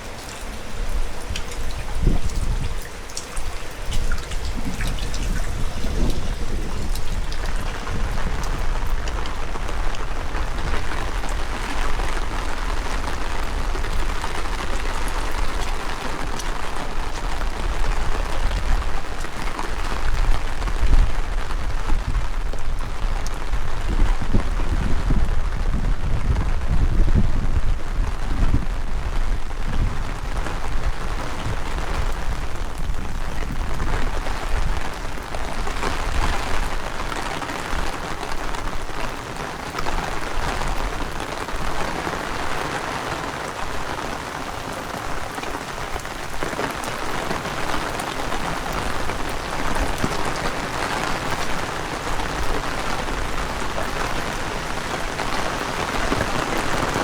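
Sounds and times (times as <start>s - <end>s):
heavy rain on street: 0.0s - 57.0s
wind buffeting microphone: 0.0s - 57.0s.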